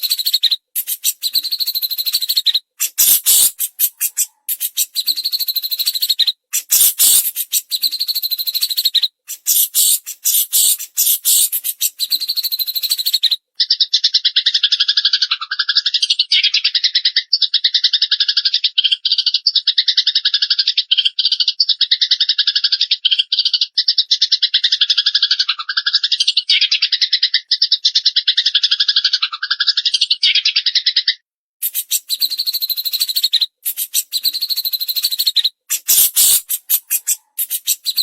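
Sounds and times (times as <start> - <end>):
songbird rapid rattling trill: 0.0 - 13.3, 31.6 - 38.0
sharp bird calls: 0.0 - 38.0.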